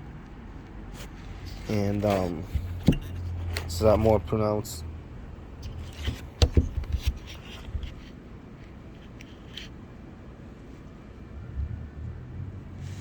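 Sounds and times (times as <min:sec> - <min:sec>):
faint handling noise: 0:00.2 - 0:04.7, 0:05.6 - 0:09.8.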